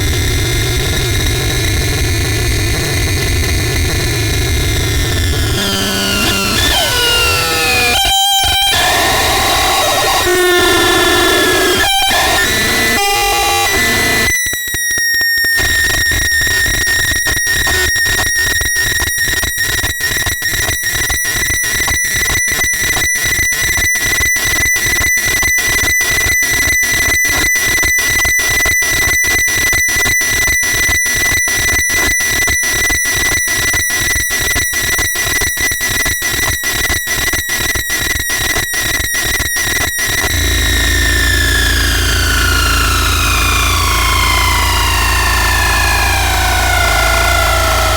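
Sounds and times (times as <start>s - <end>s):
harsh electronic noise: 0.0s - 14.4s, 40.1s - 47.9s.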